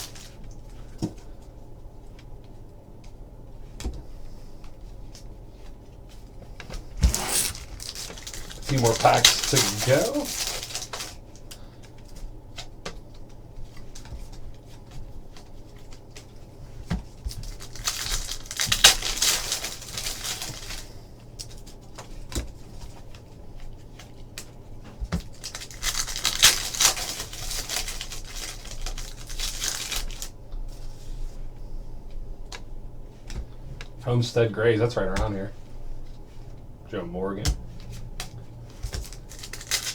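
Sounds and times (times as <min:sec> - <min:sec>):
cards clicking and flicking: 0:07.0 - 0:11.1
foil wrapper tearing and crinkling: 0:07.0 - 0:11.2, 0:17.4 - 0:20.9, 0:25.3 - 0:30.3, 0:38.9 - 0:39.9.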